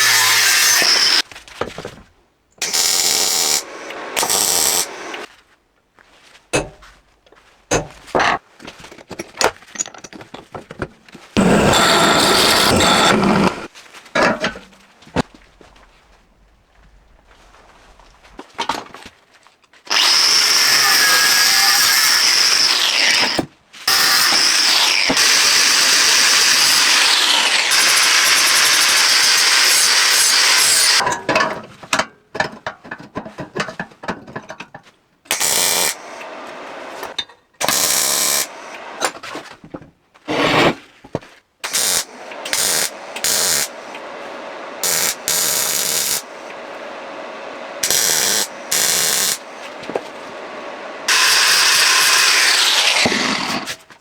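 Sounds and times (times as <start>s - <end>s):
power tool whining: 0.0s - 1.2s, 2.6s - 5.3s, 11.4s - 13.7s, 19.9s - 31.0s, 35.3s - 39.1s, 41.6s - 53.8s.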